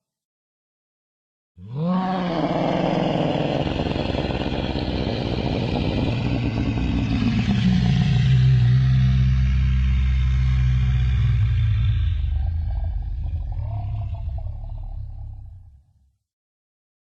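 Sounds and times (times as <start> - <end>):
low dinosaur call: 1.6 - 15.7.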